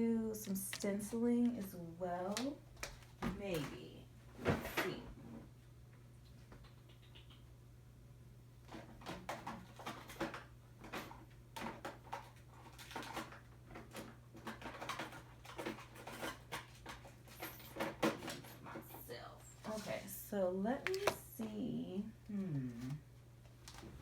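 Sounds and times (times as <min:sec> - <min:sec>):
paper rustling: 0:00.4 - 0:03.7, 0:19.6 - 0:20.1, 0:20.8 - 0:21.5
steady low hum: 0:18.4 - 0:24.0.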